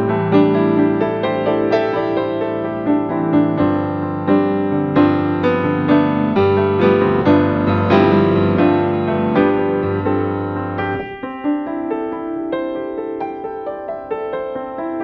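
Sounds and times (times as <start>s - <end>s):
slow piano music: 0.0s - 15.0s.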